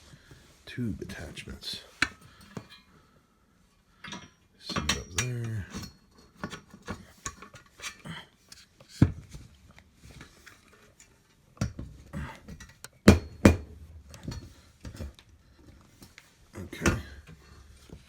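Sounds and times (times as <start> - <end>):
sharp knocks: 13.1 - 13.8.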